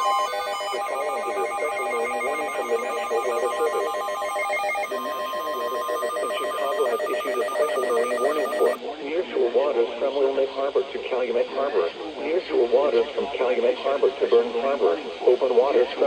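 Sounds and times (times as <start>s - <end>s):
person speaking: 0.0s - 8.7s
pulsing trilling electronic tone: 0.0s - 8.8s
steady high tone: 0.0s - 8.8s.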